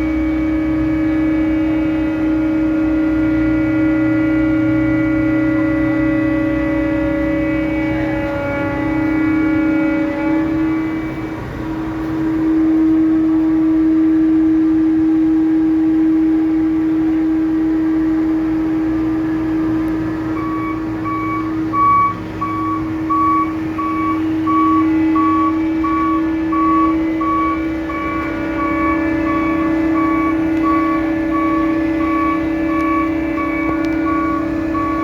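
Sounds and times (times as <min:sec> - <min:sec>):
heavy machinery humming: 0:00.0 - 0:35.0
vehicle warning beeper: 0:03.6 - 0:11.8, 0:19.6 - 0:35.0.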